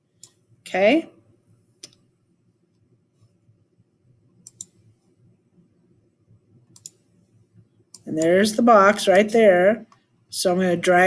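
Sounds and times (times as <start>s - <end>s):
computer mouse clicks: 0.2s - 0.4s, 4.4s - 5.1s, 6.6s - 8.4s.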